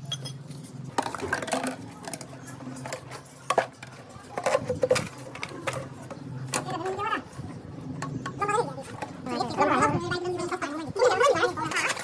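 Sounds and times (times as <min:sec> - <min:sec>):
hard objects knocking and clinking: 0:00.0 - 0:06.8.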